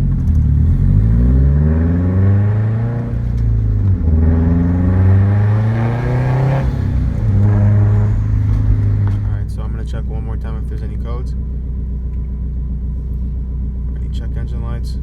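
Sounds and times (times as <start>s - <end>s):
car engine accelerating through gears: 0.0s - 9.4s.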